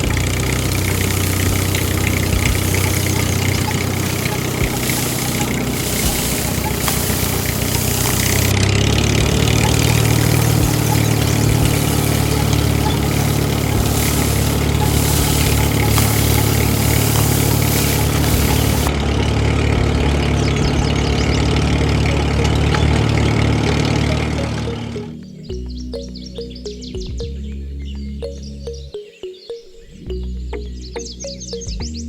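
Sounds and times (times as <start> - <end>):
engine running with low hum: 0.0 - 25.2.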